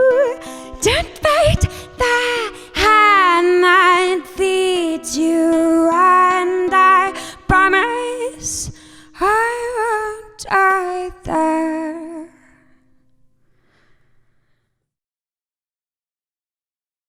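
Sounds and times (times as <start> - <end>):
woman singing wordless phrases: 0.0 - 12.6.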